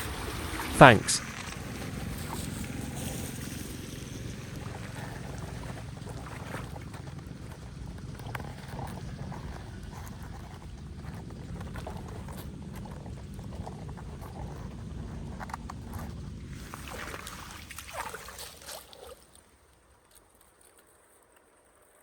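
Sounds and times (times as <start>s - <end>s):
floodwater rushing and splashing: 0.0s - 9.3s, 16.4s - 19.6s.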